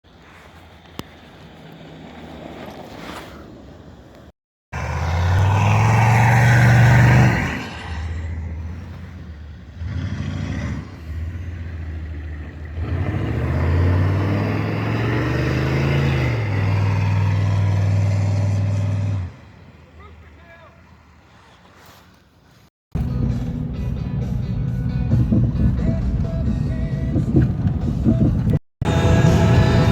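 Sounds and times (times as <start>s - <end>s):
diesel engine revving: 4.7s - 21.4s, 23.0s - 29.9s.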